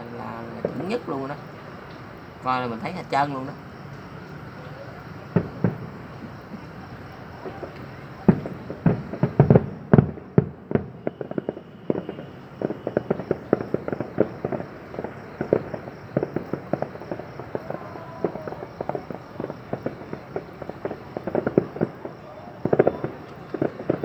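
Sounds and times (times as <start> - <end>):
fireworks bangs and pops: 0.0 - 24.0
faint thin whistle: 11.0 - 13.2.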